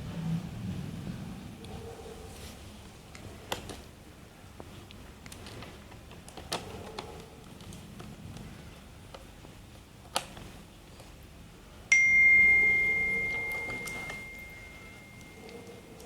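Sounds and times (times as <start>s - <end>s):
bell-like ring: 11.9s - 16.0s.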